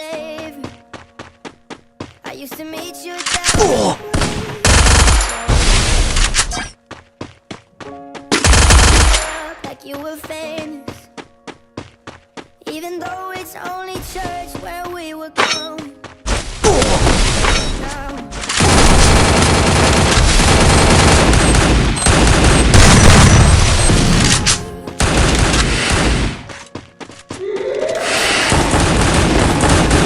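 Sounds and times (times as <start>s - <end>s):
pop song: 0.0s - 0.8s, 2.2s - 4.7s, 9.2s - 11.1s, 12.6s - 16.0s, 17.6s - 18.4s
video game gunfire with booms: 8.4s - 9.5s, 18.6s - 26.5s, 28.4s - 30.0s.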